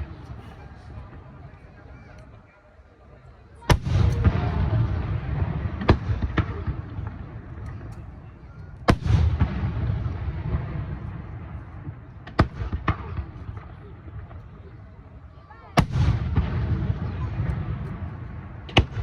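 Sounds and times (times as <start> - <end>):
rolling echo rumble: 3.6 - 19.0
small firework cracks: 3.6 - 19.0.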